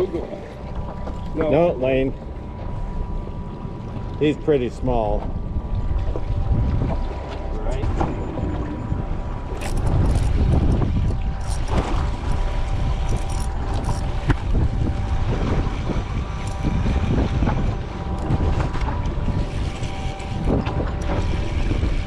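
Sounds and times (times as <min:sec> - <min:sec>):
faint steady hum: 0:00.0 - 0:22.0
wind rumbling on microphone: 0:00.0 - 0:22.0.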